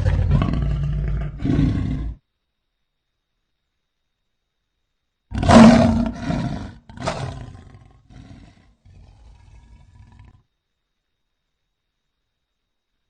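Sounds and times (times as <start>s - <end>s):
big cat roaring: 0.0s - 2.2s, 5.3s - 10.4s
low rumbling growl: 0.0s - 2.2s.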